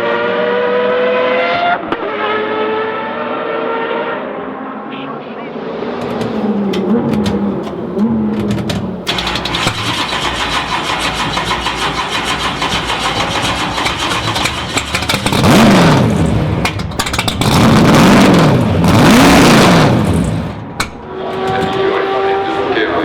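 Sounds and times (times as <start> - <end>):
racing car engine revving: 5.6 - 23.0.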